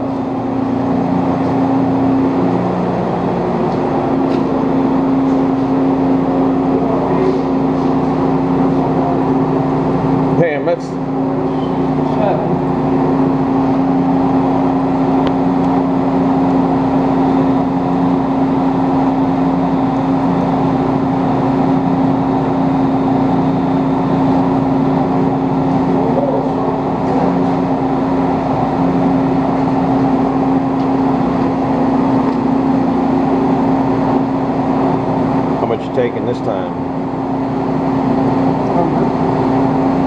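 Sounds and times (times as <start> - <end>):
metal lathe humming: 0.0 - 40.0.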